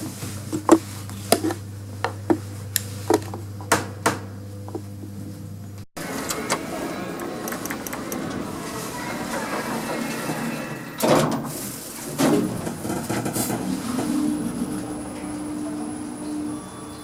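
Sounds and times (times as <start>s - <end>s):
lift running noise: 0.0s - 17.0s
low hum: 4.4s - 17.0s.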